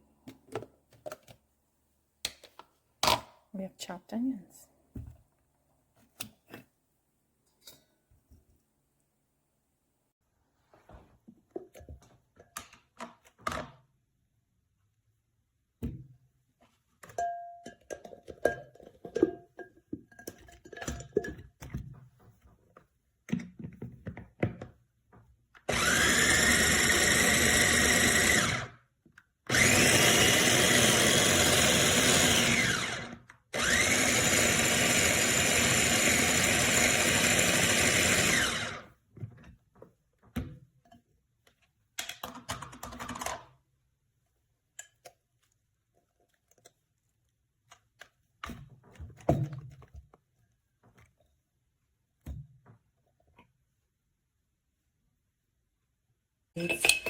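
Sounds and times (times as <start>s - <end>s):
electric food chopper motor: 25.7s - 28.8s, 29.5s - 38.9s.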